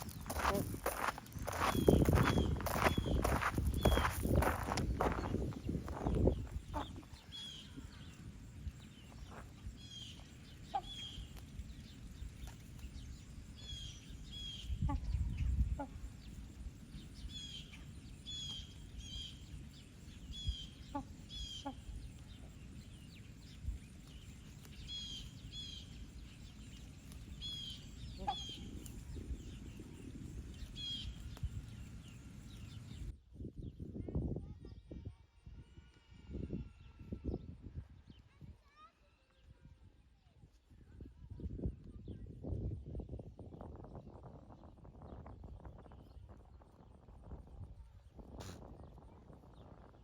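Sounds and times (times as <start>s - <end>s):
birds chirping: 0.0s - 33.1s.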